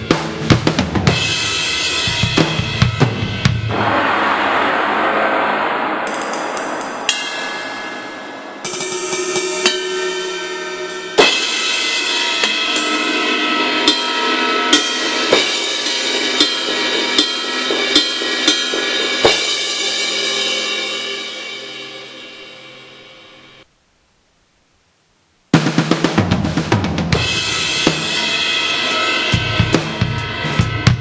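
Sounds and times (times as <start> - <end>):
cymbal crash: 1.1 - 23.6, 27.2 - 31.0
electronic drum hits: 2.2 - 9.8.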